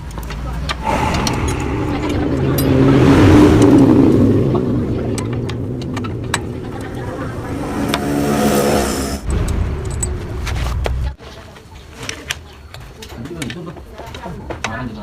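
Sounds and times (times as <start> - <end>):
two-stroke motorcycle engine revving: 2.2 - 9.3.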